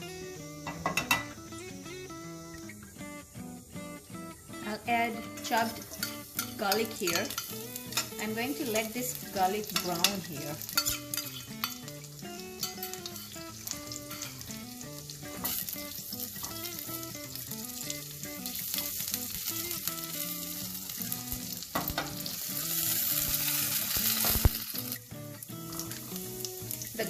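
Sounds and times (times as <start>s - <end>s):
garlic sizzling in a pan: 0.0s - 27.0s
spoon clicking in a pan: 5.4s - 8.9s, 9.6s - 12.0s, 12.6s - 14.4s.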